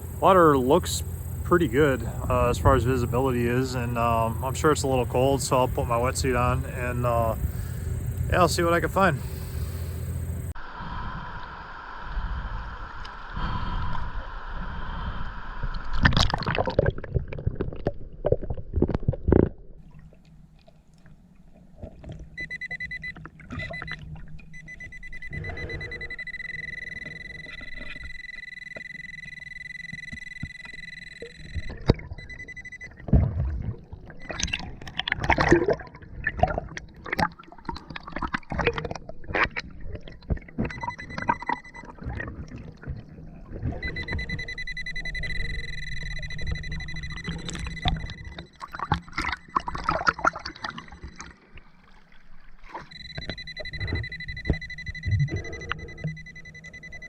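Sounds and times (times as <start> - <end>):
water gurgling and splashing: 0.0 - 9.6, 10.4 - 28.3, 30.3 - 57.0
steady high whine: 0.0 - 16.6, 22.3 - 33.1, 43.6 - 49.8, 52.7 - 57.0.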